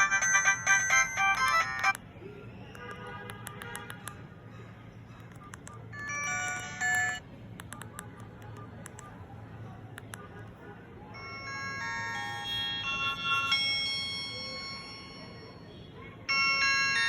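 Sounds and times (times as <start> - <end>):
phone ringtone melodies: 0.0 - 2.0, 5.9 - 7.2, 11.2 - 17.0.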